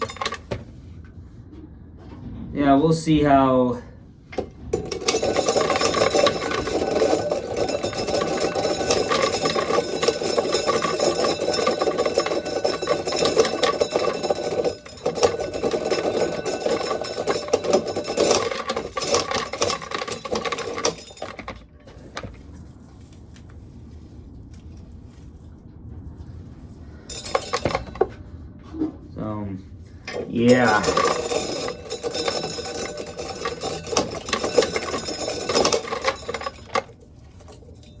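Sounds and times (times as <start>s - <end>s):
corn sheller rattling: 0.0s - 0.7s, 4.4s - 22.4s, 27.1s - 28.2s, 30.1s - 38.0s.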